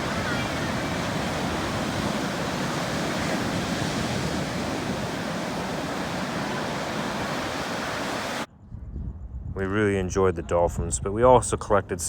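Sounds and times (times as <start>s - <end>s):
ocean surf washing onto beach: 0.0s - 8.5s
wind buffeting microphone: 0.0s - 12.0s.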